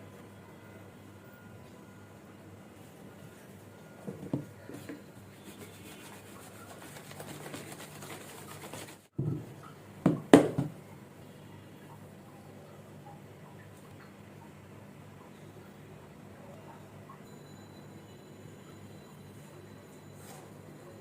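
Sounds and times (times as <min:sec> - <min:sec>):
rubbing and handling food: 0:02.8 - 0:09.2.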